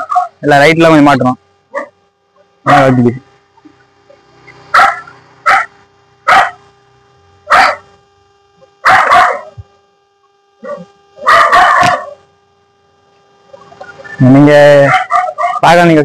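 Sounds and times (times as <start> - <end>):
dog barking: 0.0 - 0.4, 1.7 - 2.0, 2.7 - 2.9, 4.7 - 6.6, 7.5 - 7.9, 8.8 - 9.6, 10.6 - 12.2, 14.8 - 15.8.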